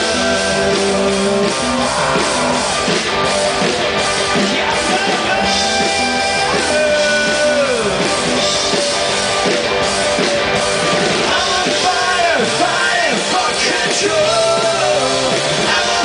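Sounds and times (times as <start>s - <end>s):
live rock band playing: 0.0s - 16.0s.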